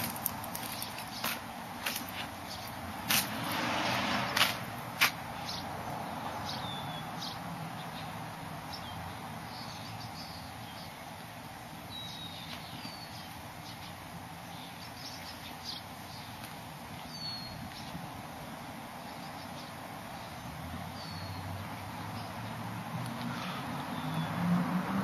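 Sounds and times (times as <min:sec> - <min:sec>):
low outdoor background noise: 0:00.0 - 0:25.0.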